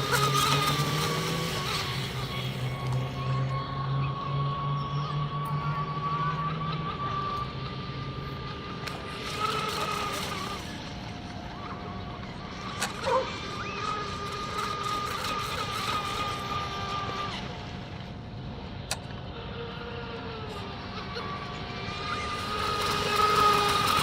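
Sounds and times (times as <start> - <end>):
rc boat electric motor whine: 0.0 - 24.0
sharp click: 18.8 - 19.2.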